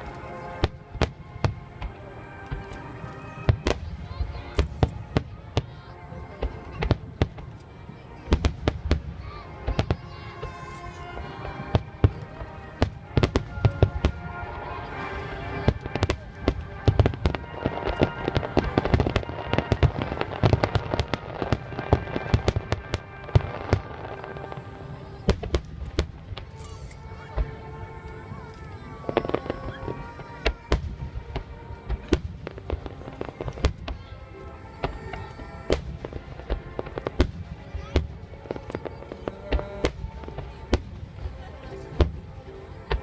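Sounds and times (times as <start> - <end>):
fireworks bursting: 0.0 - 43.0
music playing: 0.0 - 43.0.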